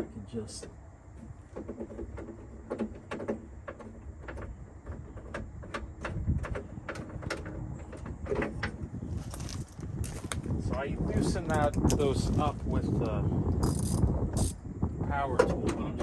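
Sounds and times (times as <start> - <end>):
low background rumble: 0.0 - 16.0
tools and metal parts clicking: 13.6 - 14.6.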